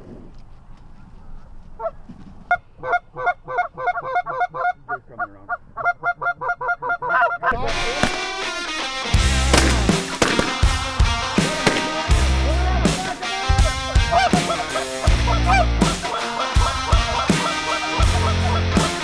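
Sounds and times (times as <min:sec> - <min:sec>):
geese honking: 0:02.5 - 0:19.0
music: 0:07.7 - 0:19.0.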